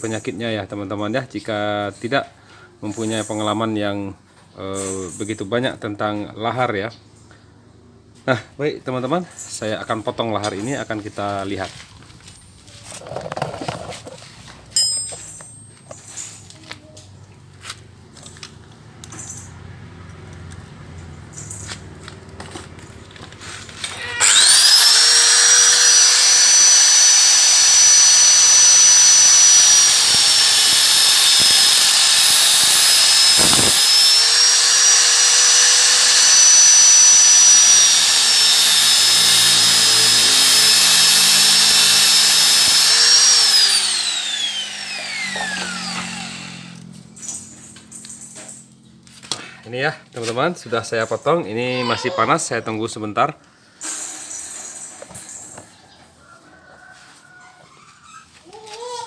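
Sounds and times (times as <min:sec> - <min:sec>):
electric cutting tool whine: 0:23.8 - 0:47.0.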